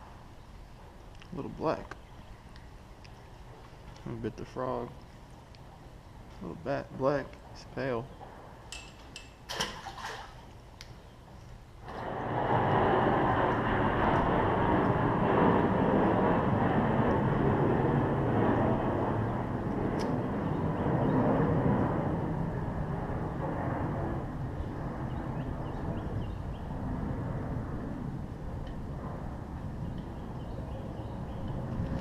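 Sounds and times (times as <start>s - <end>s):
steady engine noise: 11.8s - 30.5s.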